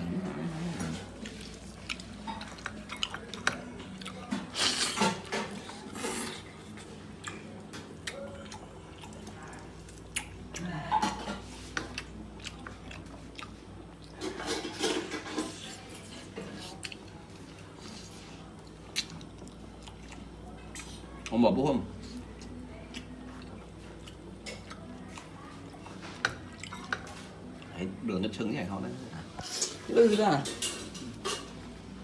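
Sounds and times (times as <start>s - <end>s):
person chewing food: 0.4s - 5.1s, 11.8s - 14.2s, 16.6s - 21.0s, 22.1s - 25.8s.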